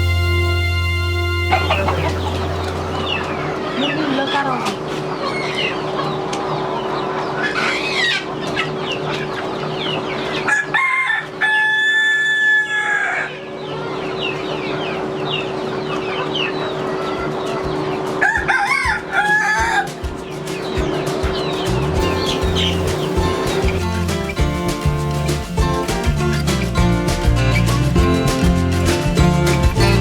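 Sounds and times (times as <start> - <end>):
chickens clucking: 1.4 - 30.0
rooster crowing: 10.4 - 13.5, 18.2 - 20.0.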